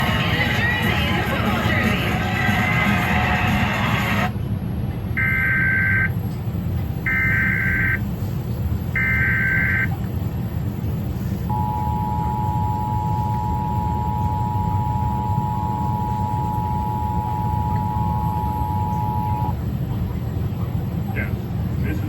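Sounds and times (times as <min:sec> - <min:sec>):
low hum: 0:04.3 - 0:22.0
two-tone attention signal: 0:09.0 - 0:09.9, 0:11.5 - 0:19.6.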